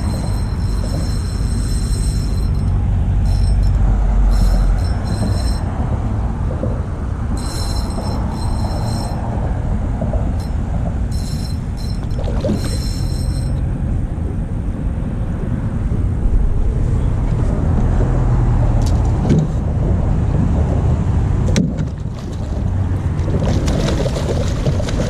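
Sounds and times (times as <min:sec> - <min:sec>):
high metallic ringing: 0:00.0 - 0:06.6, 0:07.3 - 0:13.9
wind buffeting microphone: 0:00.0 - 0:25.0.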